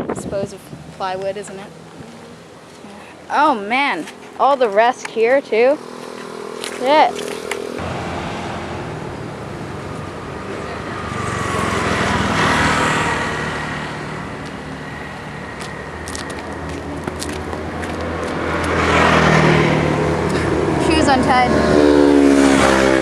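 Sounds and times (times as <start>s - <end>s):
motor vehicles passing: 0.0s - 23.0s.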